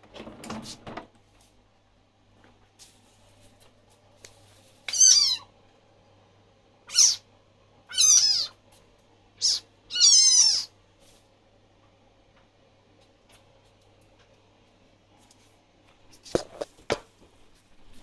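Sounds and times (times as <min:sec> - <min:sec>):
frog squeaking: 0:04.9 - 0:05.5, 0:06.9 - 0:07.2, 0:07.9 - 0:08.6, 0:09.4 - 0:10.7.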